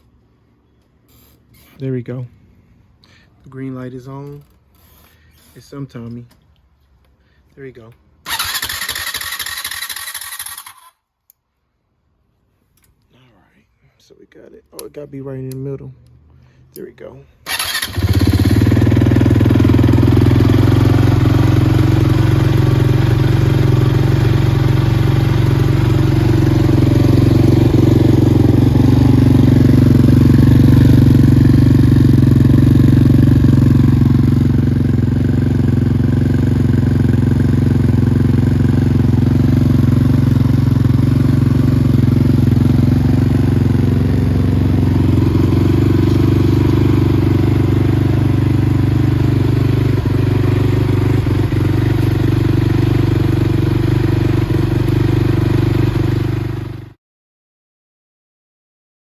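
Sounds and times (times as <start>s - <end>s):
quad bike engine idling: 8.3s - 10.9s, 17.5s - 56.9s.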